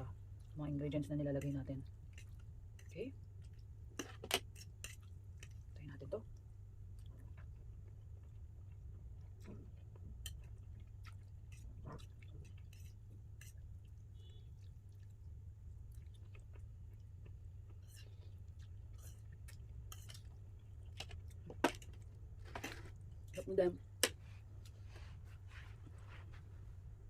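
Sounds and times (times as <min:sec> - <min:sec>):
steady low hum: 0:00.0 - 0:27.0
person chewing food: 0:03.3 - 0:05.7, 0:06.8 - 0:23.4.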